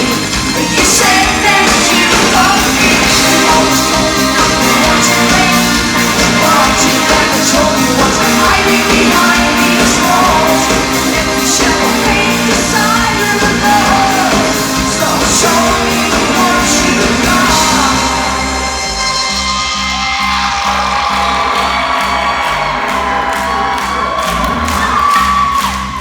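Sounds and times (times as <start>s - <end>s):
person singing: 0.0s - 19.6s
electric guitar: 0.0s - 21.1s
crowd: 0.0s - 26.0s
drums with cymbal hits: 0.0s - 26.0s.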